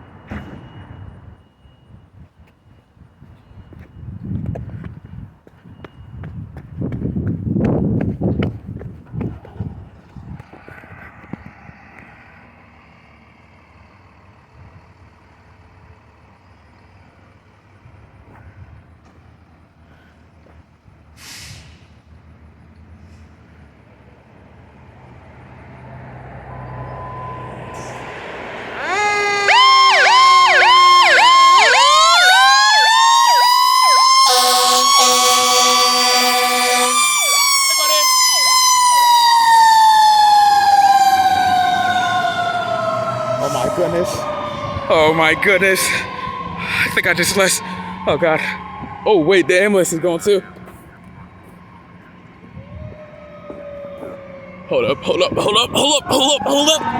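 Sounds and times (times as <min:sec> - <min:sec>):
vehicle engines idling: 0:02.3 - 0:56.9
siren slowly falling wail: 0:25.6 - 0:50.4, 0:51.1 - 0:56.9
siren yelping quickly: 0:28.7 - 0:49.8, 0:52.6 - 0:56.9.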